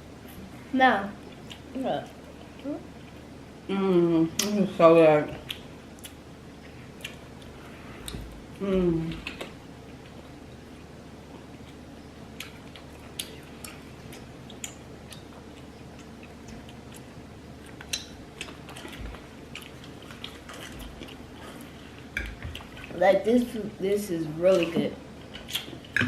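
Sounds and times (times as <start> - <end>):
close chewing crunchy food: 11.3 - 23.0.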